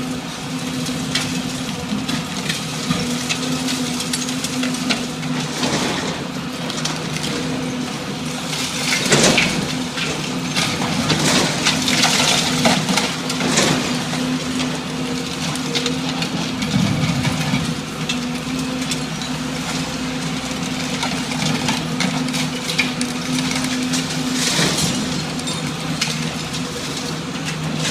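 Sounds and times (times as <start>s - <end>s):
heavy machine engine running: 0.0s - 27.9s
building material crushing: 1.1s - 27.9s.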